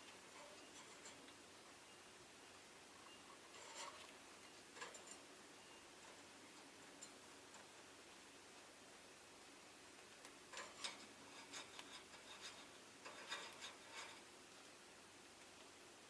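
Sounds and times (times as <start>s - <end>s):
small clicks and scrapes: 0.0s - 1.4s, 3.0s - 5.3s, 6.0s - 7.9s, 10.0s - 14.6s
faint scratching and rasping: 0.0s - 1.5s, 3.0s - 8.0s, 10.2s - 14.7s
room hiss: 0.0s - 16.0s.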